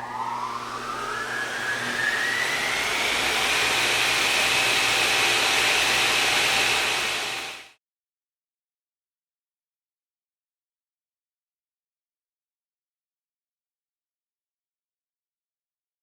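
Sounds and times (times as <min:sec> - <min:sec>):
machine motor whining: 0:00.0 - 0:07.7.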